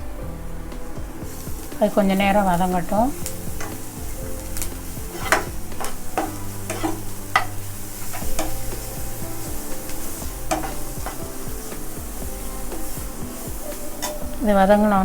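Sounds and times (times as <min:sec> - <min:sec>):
onions sizzling in hot oil: 0:00.0 - 0:15.0
spatula scraping and tapping pan: 0:02.8 - 0:14.4.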